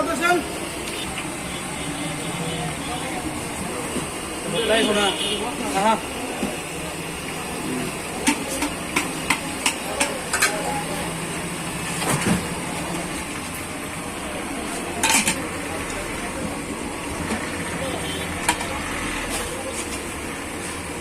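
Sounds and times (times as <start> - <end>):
food stall background noise: 0.0 - 21.0
utensil clatter: 8.1 - 11.0, 14.6 - 16.6
metal utensils knocking: 15.0 - 15.5.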